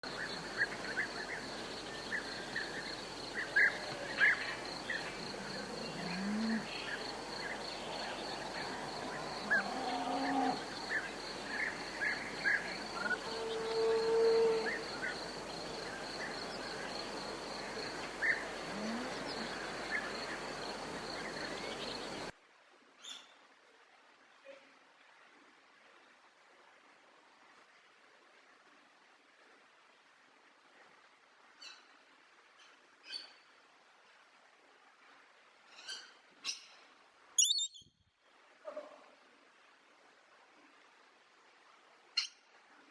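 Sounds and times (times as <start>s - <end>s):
insect trill: 0.2s - 22.3s
lower bird calls: 2.0s - 16.7s, 17.7s - 22.3s, 37.4s - 37.9s
birds chirping: 37.4s - 37.9s.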